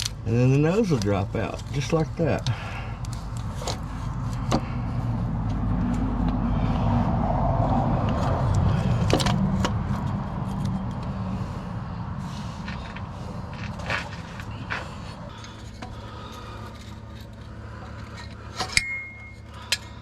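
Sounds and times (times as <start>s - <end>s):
vehicle passing by: 2.5s - 18.6s
metallic clinks of tools: 18.6s - 19.9s.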